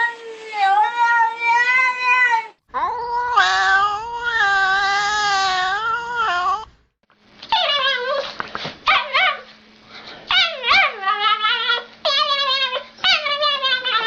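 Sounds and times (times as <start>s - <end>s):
dog whining and yipping: 7.5s - 8.3s, 10.3s - 14.0s.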